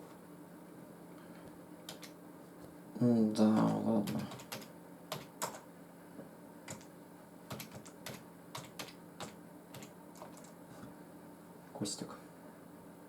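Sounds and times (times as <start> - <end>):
keyboard keys clicking: 1.9 - 2.1, 6.7 - 6.9, 7.5 - 10.5.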